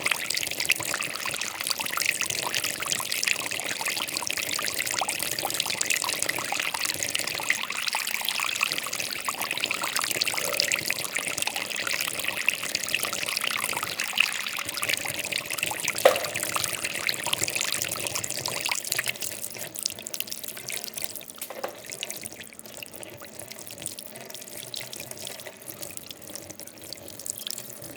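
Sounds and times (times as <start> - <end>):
water drips: 0.0 - 27.9
water trickling and splashing: 0.0 - 27.9
short plink: 16.0 - 16.6.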